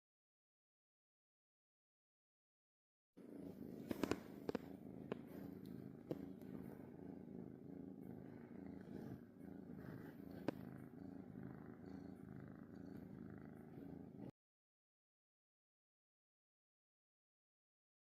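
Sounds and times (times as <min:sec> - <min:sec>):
cat purring: 0:03.2 - 0:14.4.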